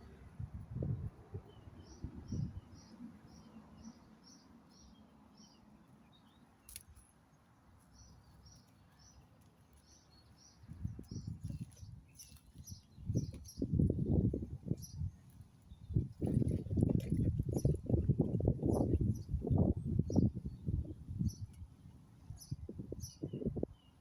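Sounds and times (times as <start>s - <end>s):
wind rumble on microphone: 0.0s - 3.9s, 10.4s - 24.0s
bird chirping: 1.4s - 21.5s.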